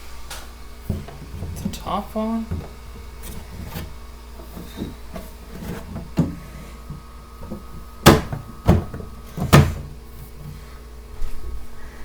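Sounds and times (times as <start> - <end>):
printer cover knocking: 0.9 - 1.8, 2.4 - 10.0.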